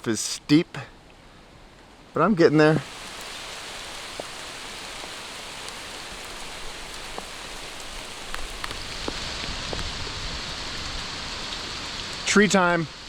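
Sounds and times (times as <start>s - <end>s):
heavy rain hiss: 2.5s - 13.0s
raindrops ticking: 2.7s - 9.9s.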